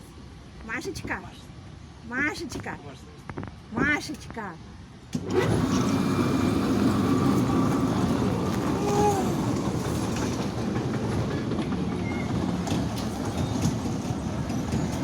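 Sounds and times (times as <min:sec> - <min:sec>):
ride-on toy train rumbling: 0:05.2 - 0:15.0.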